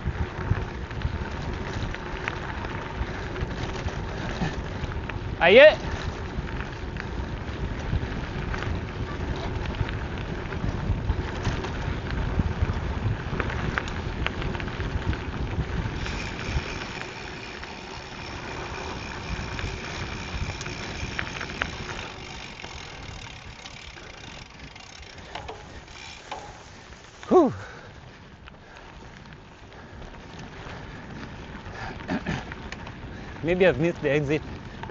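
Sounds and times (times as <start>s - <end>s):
bike tyre rumble on gravel: 0.0s - 34.9s
rattles and crunches: 15.9s - 27.4s.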